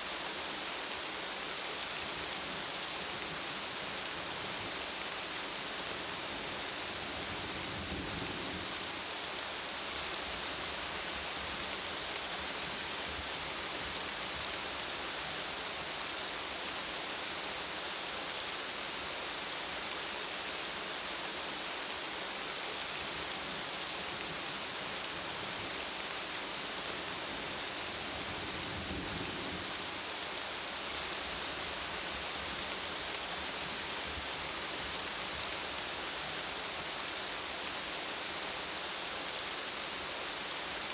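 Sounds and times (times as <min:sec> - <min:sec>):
heavy rain falling: 0:21.4 - 0:40.9.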